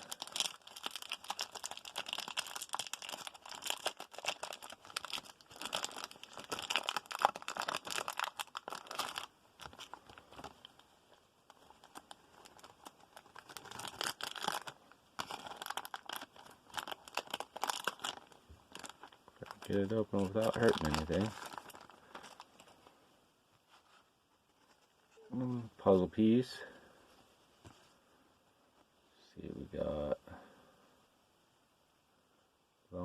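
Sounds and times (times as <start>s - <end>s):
wrapper crinkling and tearing: 0.0s - 22.9s.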